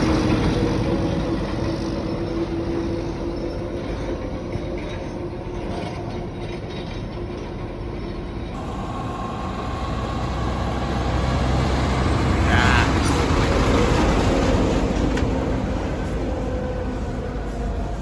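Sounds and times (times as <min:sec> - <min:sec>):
passing traffic rumble: 0:08.6 - 0:18.0
vehicle approaching: 0:08.6 - 0:18.0.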